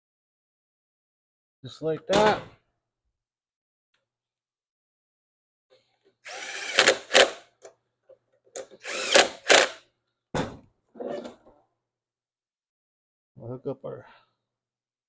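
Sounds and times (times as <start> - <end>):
power drill motor spinning: 6.2 - 7.4, 8.8 - 9.8.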